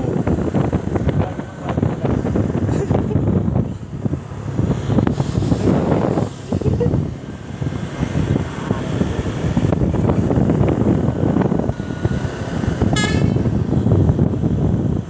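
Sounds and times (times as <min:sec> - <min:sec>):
bus engine and road noise: 0:00.0 - 0:15.0
high horn toot: 0:12.8 - 0:13.6.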